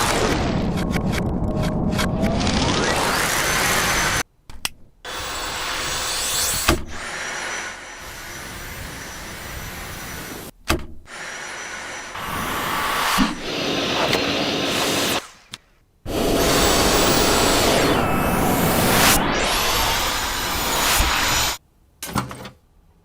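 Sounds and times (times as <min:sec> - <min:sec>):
vacuum cleaner motor running: 0:11.2 - 0:15.2, 0:16.1 - 0:21.6.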